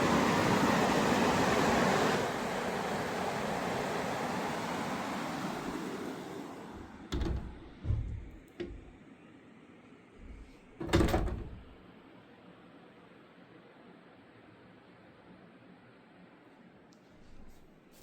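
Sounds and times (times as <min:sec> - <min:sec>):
rushing river water: 0:00.0 - 0:07.0
sudden thumps and knocks: 0:07.1 - 0:08.9.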